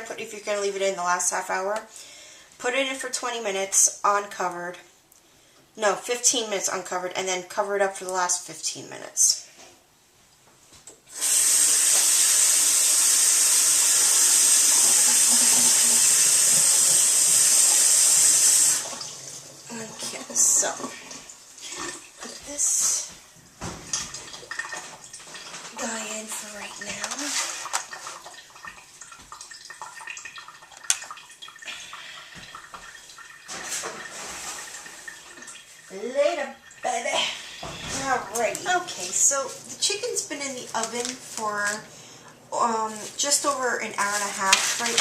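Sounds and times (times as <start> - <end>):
water running from a tap: 11.1 - 40.4.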